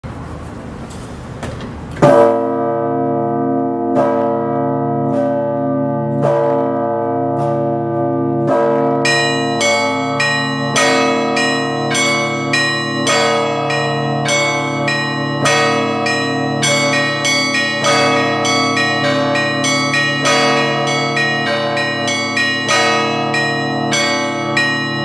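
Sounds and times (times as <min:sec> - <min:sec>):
large church bell ringing: 0:02.0 - 0:25.0
small bells chiming: 0:09.0 - 0:25.0.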